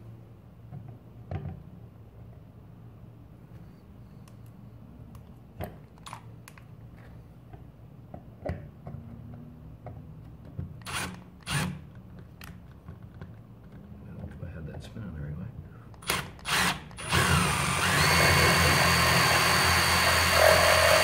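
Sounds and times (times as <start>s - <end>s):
power drill boring into plastic: 10.8s - 11.8s, 16.0s - 21.0s.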